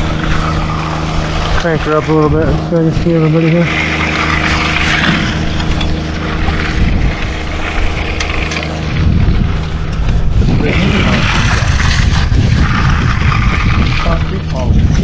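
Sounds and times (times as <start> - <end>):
engine running: 0.0 - 15.0
wind rumbling on microphone: 0.0 - 15.0.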